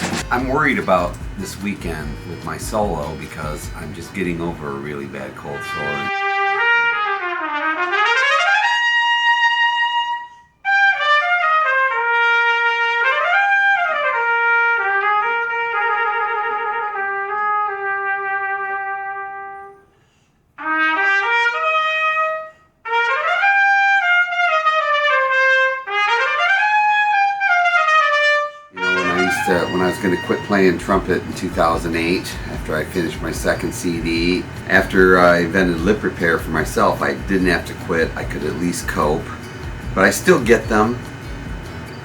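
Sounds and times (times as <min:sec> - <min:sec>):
trumpet glissandi and held notes: 0:00.0 - 0:19.9, 0:20.6 - 0:42.0.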